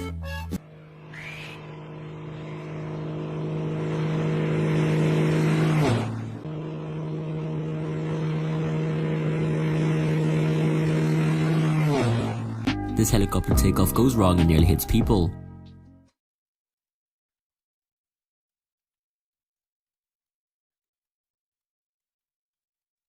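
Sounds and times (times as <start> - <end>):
aircraft passing overhead: 0.0 - 15.6.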